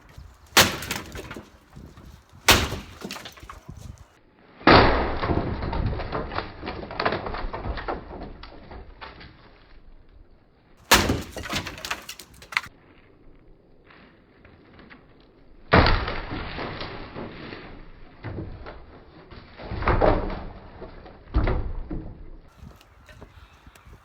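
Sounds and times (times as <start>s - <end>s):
breaking boards rattling: 0.0s - 4.1s, 10.8s - 12.7s
timber cracking and splintering: 0.0s - 10.2s, 10.8s - 12.8s, 14.4s - 23.3s.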